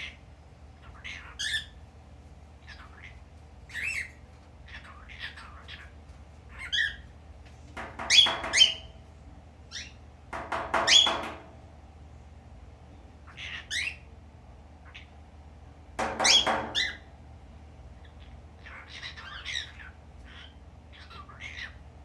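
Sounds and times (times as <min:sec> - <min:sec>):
cockatiel squawking and whistling: 0:08.0 - 0:08.9, 0:10.8 - 0:11.4, 0:16.2 - 0:17.0.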